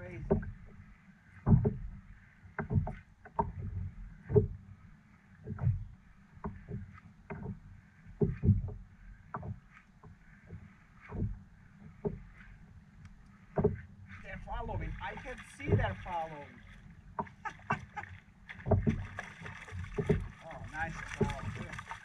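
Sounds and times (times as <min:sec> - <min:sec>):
water knocking against boat hull: 0:00.0 - 0:00.8, 0:01.4 - 0:04.7, 0:05.3 - 0:12.6, 0:13.5 - 0:22.0
faint water wash: 0:10.2 - 0:22.0.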